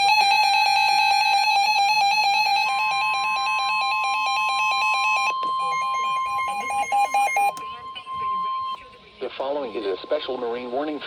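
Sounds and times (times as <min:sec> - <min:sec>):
steady warning alarm tone: 0:00.0 - 0:11.0
pulsing alert beeps: 0:04.2 - 0:08.9.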